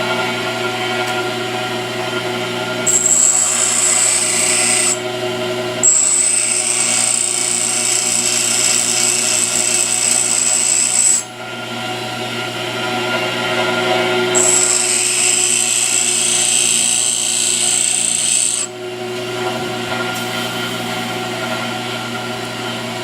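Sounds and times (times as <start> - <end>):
grinder motor hum: 0.0 - 23.0
tool bit grinding hiss: 2.9 - 5.0, 5.8 - 11.3, 14.3 - 18.7.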